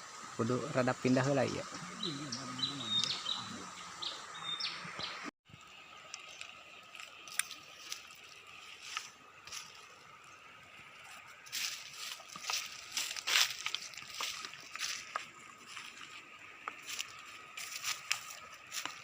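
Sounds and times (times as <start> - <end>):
faint steady hiss: 0.0 - 19.0
bird high chirps: 1.9 - 5.2.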